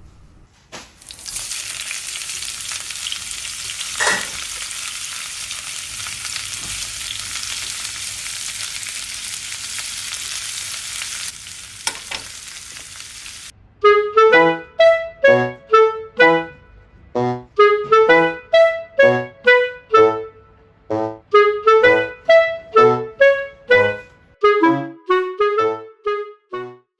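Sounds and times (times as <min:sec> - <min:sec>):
food sizzling in frying pan: 0:01.0 - 0:13.5.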